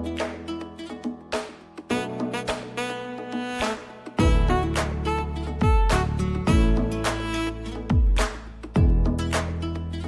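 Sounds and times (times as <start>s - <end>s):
plucked guitar-like notes: 0.0s - 10.0s
deep bass beat: 4.2s - 9.4s.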